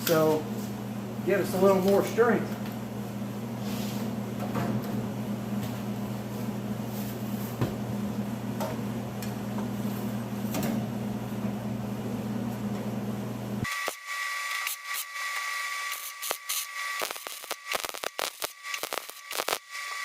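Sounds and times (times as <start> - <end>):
low machine hum: 0.0 - 13.7.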